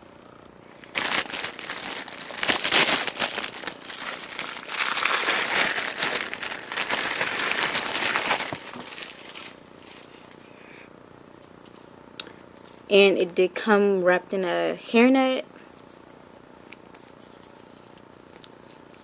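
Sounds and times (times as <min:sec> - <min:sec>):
packaging crinkling: 0:00.7 - 0:10.5.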